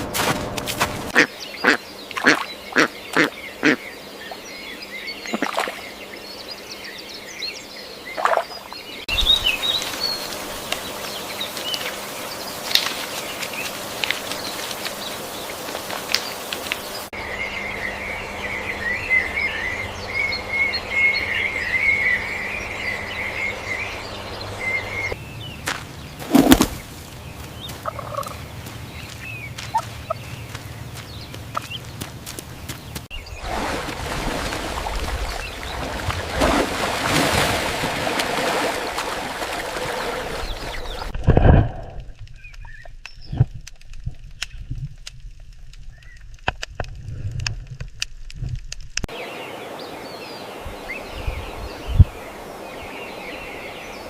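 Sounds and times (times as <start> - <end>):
poultry calling and peeping: 1.1 - 4.4, 17.2 - 32.1.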